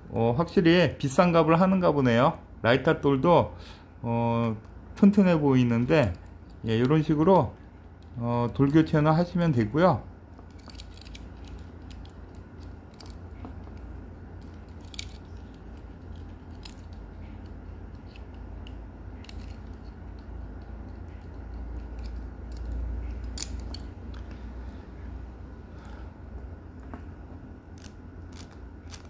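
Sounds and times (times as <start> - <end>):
steady low hum: 0.0 - 29.0
small metal parts clicking: 10.4 - 24.4, 27.7 - 29.0.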